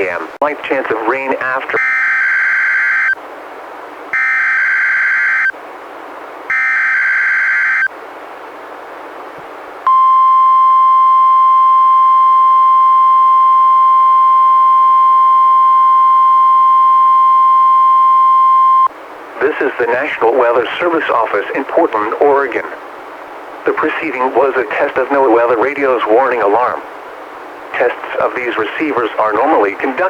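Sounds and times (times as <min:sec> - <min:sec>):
radio hiss: 0:00.0 - 0:03.2, 0:19.4 - 0:22.9, 0:23.6 - 0:30.0
steady alarm tone: 0:01.8 - 0:03.2, 0:04.1 - 0:05.5, 0:06.5 - 0:07.9, 0:09.9 - 0:18.9.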